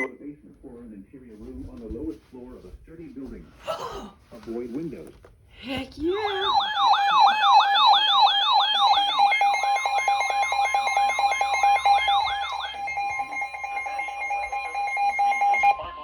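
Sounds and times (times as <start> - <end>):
weather radio warning alarm tone: 6.2 - 16.0
fast sweeping siren tone: 6.6 - 15.8
steady electronic tone: 8.6 - 15.8.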